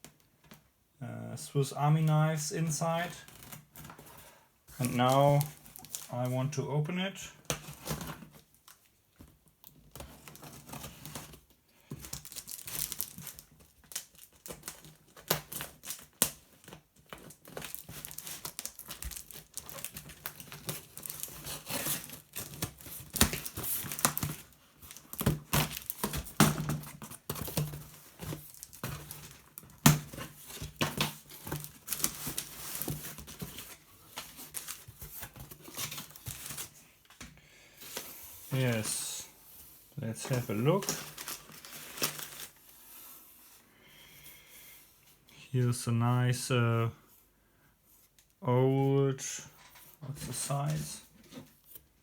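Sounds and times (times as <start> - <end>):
wrapping crinkling and rustling: 1.9 - 43.6
packaging tearing: 17.2 - 26.7, 40.3 - 42.6.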